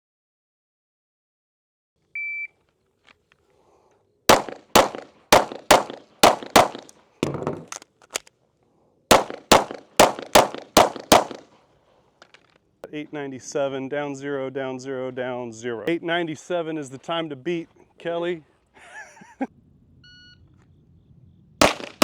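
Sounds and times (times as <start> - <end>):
pistol shots: 4.3 - 6.9, 9.1 - 11.5, 21.6 - 22.0.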